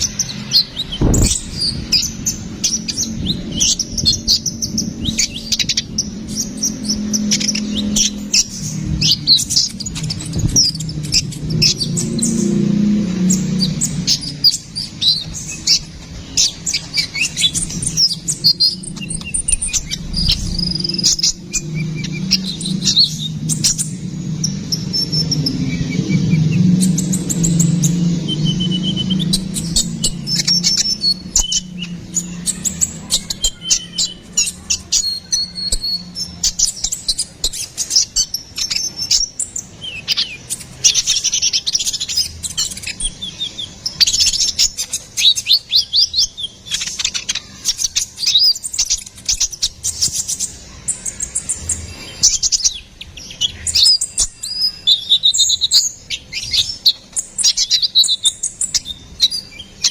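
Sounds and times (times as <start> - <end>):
bird chirping and trilling: 0.0 - 59.9.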